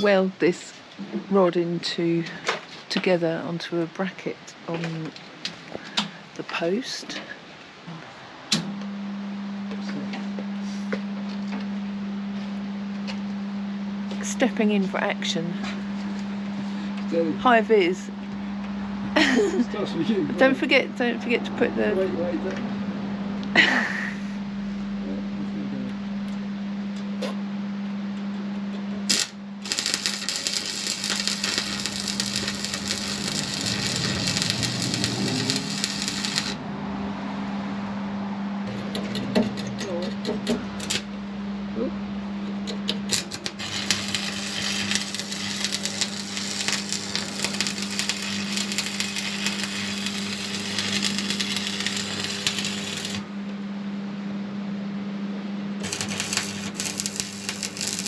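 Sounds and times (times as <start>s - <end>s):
steady hum: 0.0s - 58.0s
welding arc crackling: 18.8s - 21.1s, 29.1s - 36.7s, 38.6s - 41.2s, 42.6s - 53.4s, 55.8s - 58.0s.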